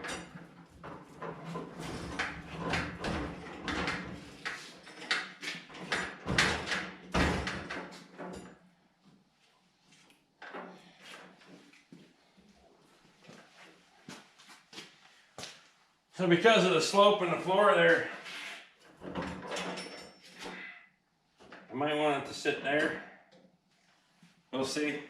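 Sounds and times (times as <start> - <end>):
metal tool cart rolling: 0.0 - 6.2
knocks and rattles: 0.0 - 8.5, 18.9 - 20.7.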